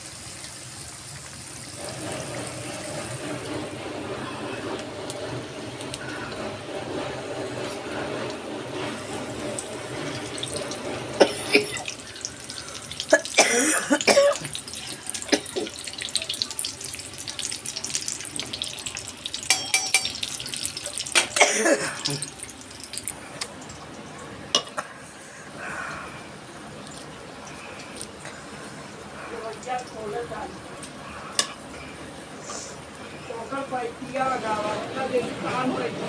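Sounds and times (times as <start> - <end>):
person coughing: 11.2 - 11.9, 13.1 - 14.5, 21.4 - 22.3.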